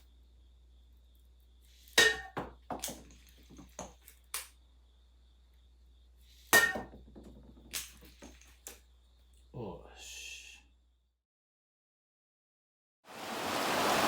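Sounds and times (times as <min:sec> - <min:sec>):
tableware clinking: 0:02.0 - 0:03.8, 0:06.6 - 0:07.0.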